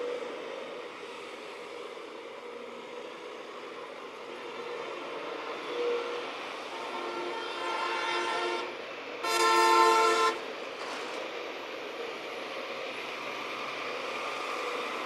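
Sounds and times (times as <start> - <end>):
horn blasts: 6.7 - 10.5.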